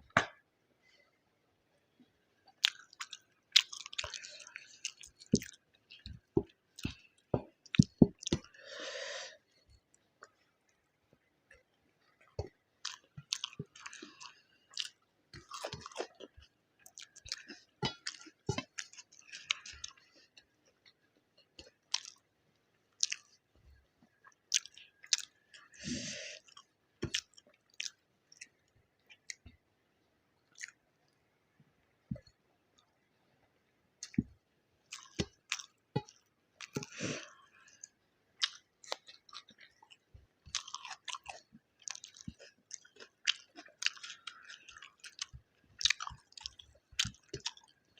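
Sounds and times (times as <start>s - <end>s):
person chewing food: 2.4s - 10.9s, 11.5s - 29.6s, 30.4s - 33.1s, 34.0s - 47.9s.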